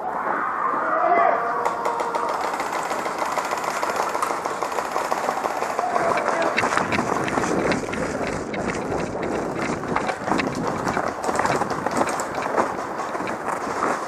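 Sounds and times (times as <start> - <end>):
running footsteps: 1.6 - 14.0
clothing and gear rustling: 4.7 - 14.0.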